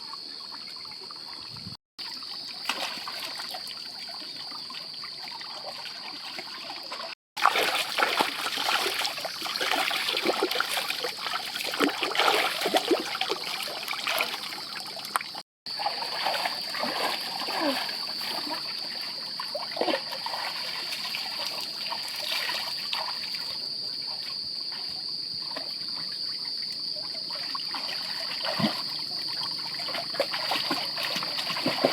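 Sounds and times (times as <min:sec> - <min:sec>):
water trickling and splashing: 0:00.3 - 0:31.9.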